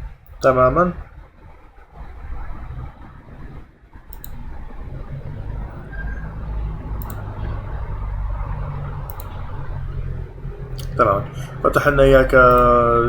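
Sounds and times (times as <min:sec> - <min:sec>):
low steady rumble: 0:00.0 - 0:13.0
computer mouse clicks: 0:04.1 - 0:04.5, 0:07.0 - 0:07.3, 0:09.0 - 0:09.4, 0:10.8 - 0:11.0, 0:12.5 - 0:12.7.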